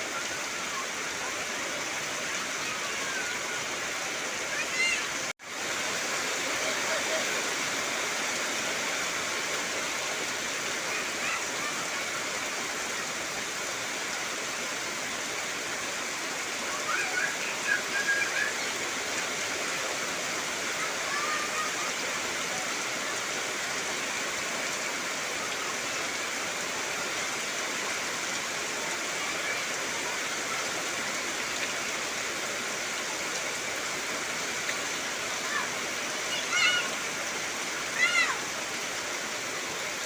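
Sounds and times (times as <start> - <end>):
heavy rain on trees: 0.0 - 40.0.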